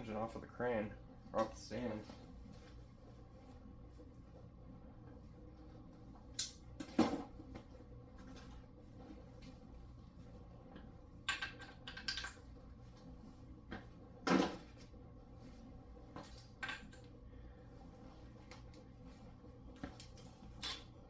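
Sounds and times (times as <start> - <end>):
low steady hum: 0.0 - 21.0
metal tools clinking and knocking: 11.3 - 12.4.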